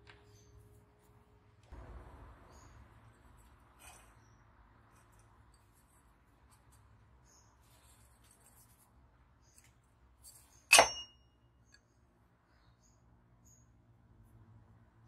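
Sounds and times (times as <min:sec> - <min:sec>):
metal clank with ring: 0:10.7 - 0:11.3.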